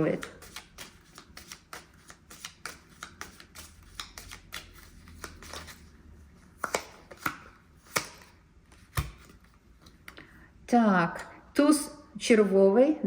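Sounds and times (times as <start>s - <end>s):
cards being shuffled: 0.0s - 5.9s, 6.5s - 10.1s
cards snapping: 0.1s - 5.8s, 6.6s - 9.4s.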